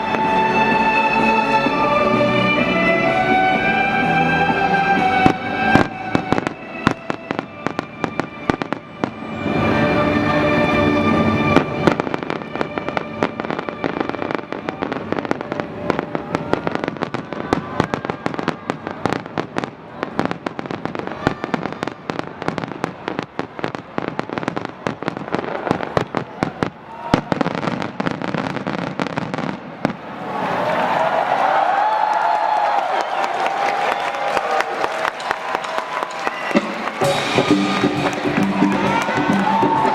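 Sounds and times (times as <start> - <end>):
fireworks bangs and crackles: 0.0 - 1.8, 2.5 - 30.2, 33.9 - 39.9
orchestral music: 0.0 - 22.8, 34.6 - 39.9.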